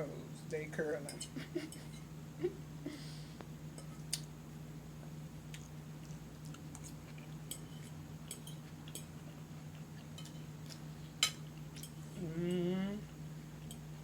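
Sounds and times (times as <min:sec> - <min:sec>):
person chewing food: 0:05.5 - 0:12.1.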